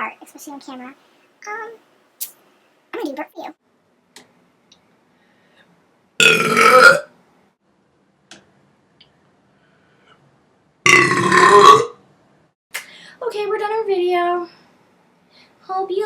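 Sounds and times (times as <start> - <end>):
person burping: 6.2 - 7.1, 10.9 - 12.0.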